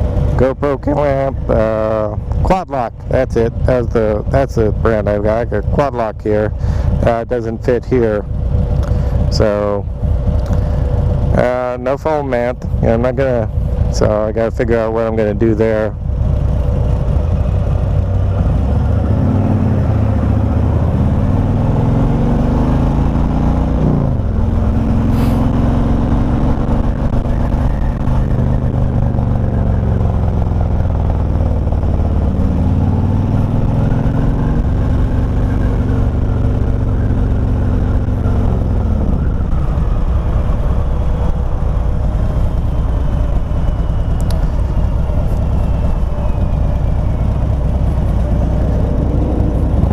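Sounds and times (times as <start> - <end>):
motorcycle engine revving: 0.0 - 49.9
rush of riding noise: 0.0 - 49.9.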